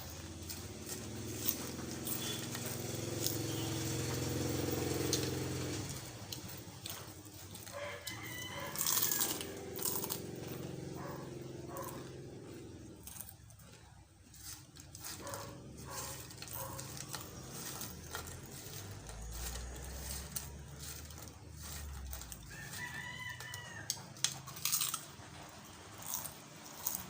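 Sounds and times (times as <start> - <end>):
chips crunching and chewing: 0.0 - 27.0
rooster crowing: 1.6 - 12.4, 15.2 - 24.8.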